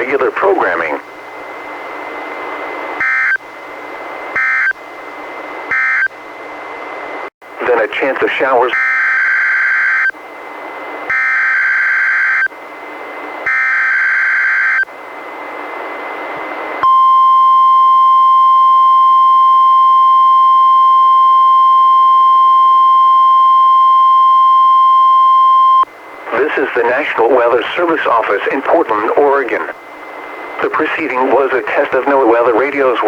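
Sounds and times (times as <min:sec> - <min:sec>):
receiver hiss: 0:00.0 - 0:06.1, 0:07.5 - 0:33.0
steady warning alarm tone: 0:03.0 - 0:04.9, 0:05.7 - 0:06.4, 0:08.6 - 0:10.2, 0:11.1 - 0:14.9, 0:16.8 - 0:25.9.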